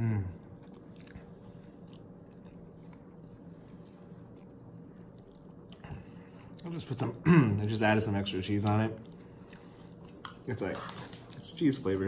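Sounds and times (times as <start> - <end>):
person chewing noodles: 0.0 - 6.7, 9.0 - 10.2.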